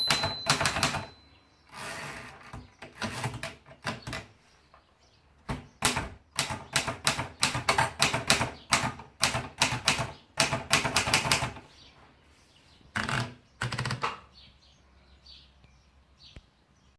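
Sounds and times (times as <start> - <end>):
typewriter clattering: 0.0 - 1.2, 2.4 - 4.3, 5.5 - 11.6
typewriter key strikes: 0.0 - 1.2, 5.8 - 11.6.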